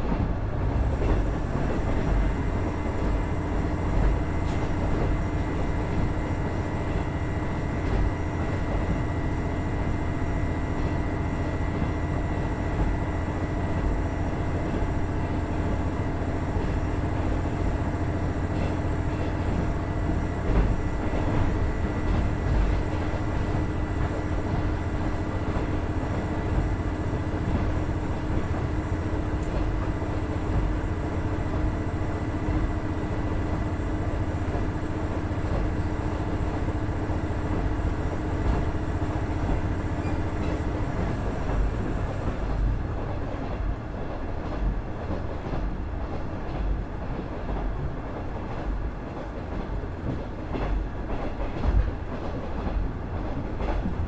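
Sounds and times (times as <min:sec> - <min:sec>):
diesel railcar engine: 0:00.0 - 0:54.0
wheels rumbling on rail: 0:00.0 - 0:54.0.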